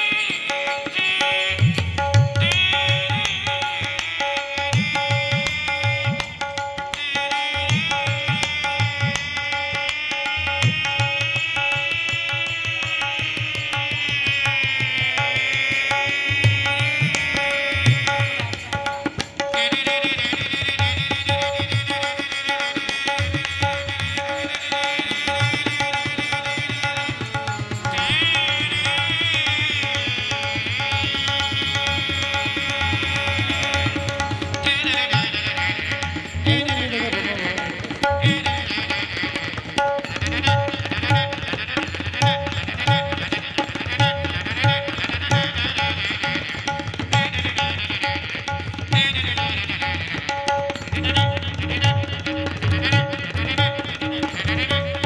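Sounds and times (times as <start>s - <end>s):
tabla drum strokes: 0.0s - 55.0s.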